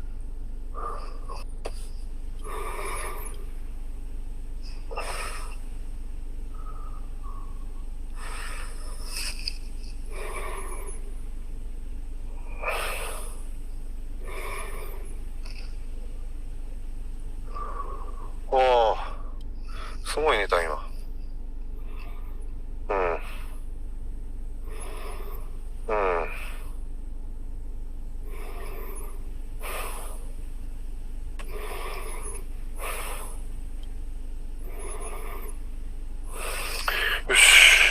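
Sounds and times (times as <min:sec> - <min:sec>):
steady low hum: 0:00.0 - 0:37.9
person snoring: 0:10.1 - 0:11.1, 0:31.5 - 0:33.4, 0:34.6 - 0:35.6, 0:36.3 - 0:37.9
car cabin hum: 0:23.6 - 0:37.9.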